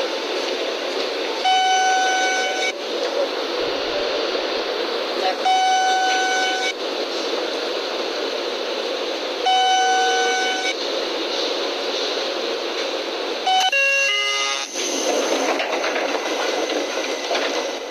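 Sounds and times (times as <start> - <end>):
electronic train door chime: 1.5 - 2.8, 5.5 - 6.8, 9.5 - 10.8, 13.5 - 15.4.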